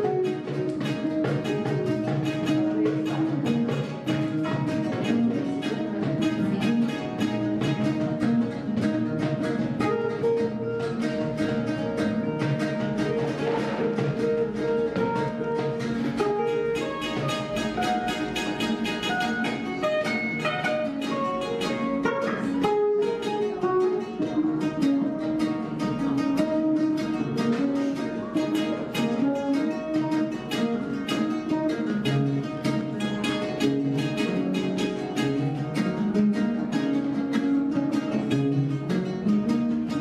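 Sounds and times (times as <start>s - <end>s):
guitar: 0.0s - 40.0s
plucked string instrument: 0.0s - 40.0s.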